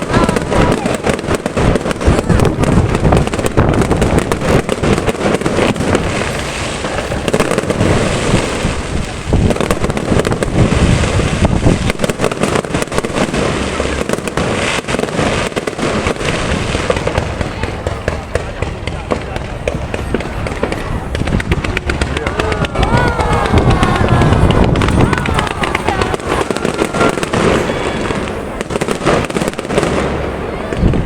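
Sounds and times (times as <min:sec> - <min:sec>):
fireworks bangs and crackling: 0:00.0 - 0:31.0.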